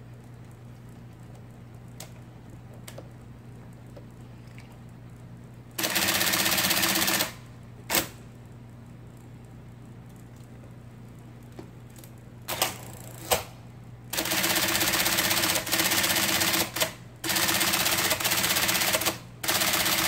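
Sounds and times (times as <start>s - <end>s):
steady hum: 0.0s - 20.0s
typewriter clatter: 14.2s - 20.0s.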